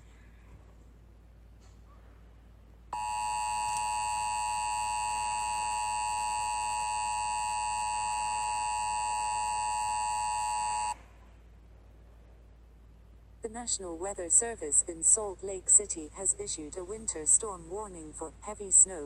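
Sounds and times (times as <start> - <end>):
two-tone alert alarm: 3.0 - 11.0.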